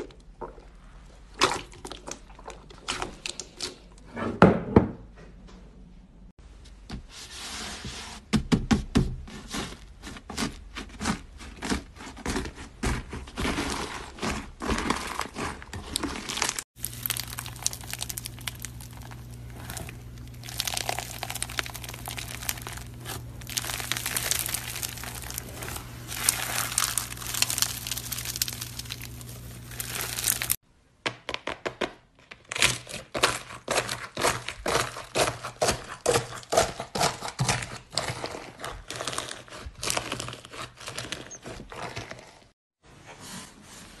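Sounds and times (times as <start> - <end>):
slime crackling and popping: 14.8 - 30.6
low hum: 16.8 - 30.6.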